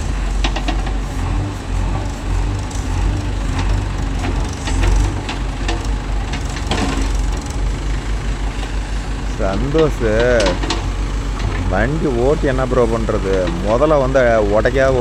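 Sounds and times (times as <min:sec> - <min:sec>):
sharp knocks and clatters: 0:00.0 - 0:11.8
diesel engine running: 0:00.0 - 0:15.0.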